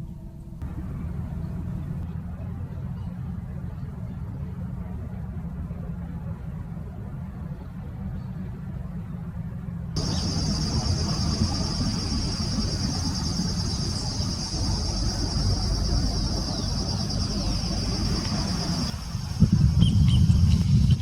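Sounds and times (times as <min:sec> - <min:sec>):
low rumble: 0:00.5 - 0:03.5, 0:10.0 - 0:21.0
insect trilling: 0:10.0 - 0:18.9.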